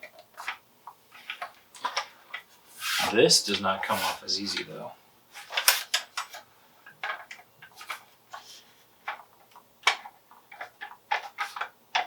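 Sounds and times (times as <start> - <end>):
toy rifle parts clicking and knocking: 1.2 - 2.5, 5.4 - 12.0.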